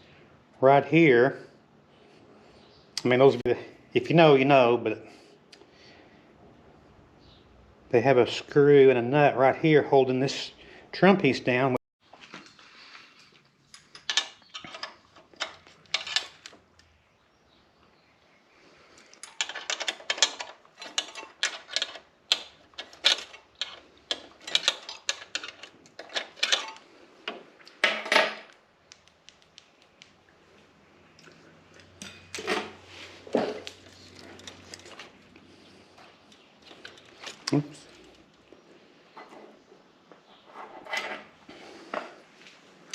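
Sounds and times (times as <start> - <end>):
hand tools clinking on metal: 13.7 - 16.6, 19.0 - 26.8, 36.2 - 38.2.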